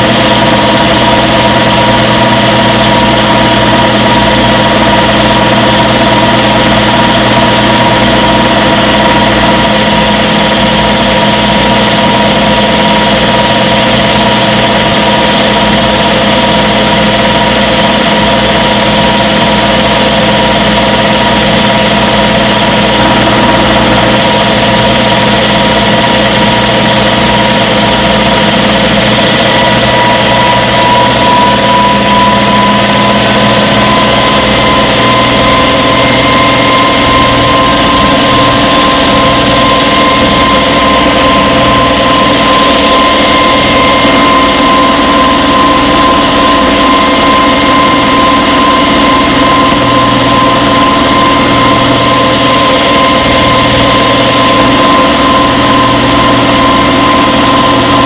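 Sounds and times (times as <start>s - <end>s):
washing machine motor whine: 0.0s - 58.0s.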